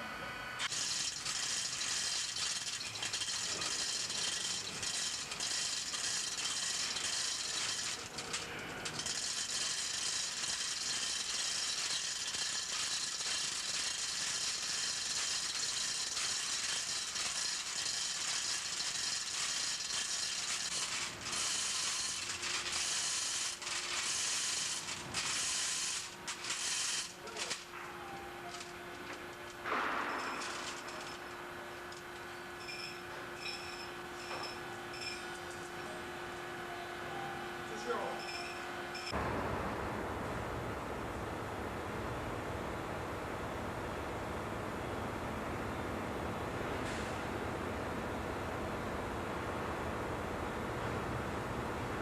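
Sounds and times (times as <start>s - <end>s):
mechanical ratcheting rattle: 0.6s - 27.6s.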